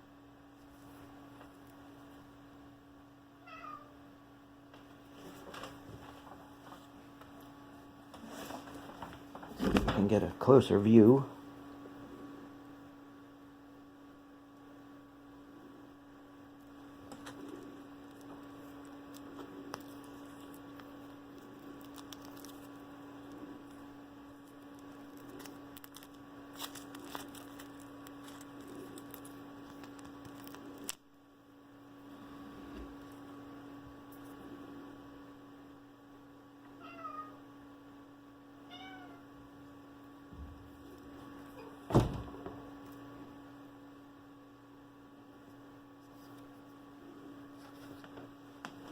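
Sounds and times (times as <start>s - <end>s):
electrical hum: 0.0s - 48.9s
cat meowing: 3.4s - 4.0s, 36.8s - 37.4s, 38.7s - 39.3s
loud thump: 41.9s - 42.6s.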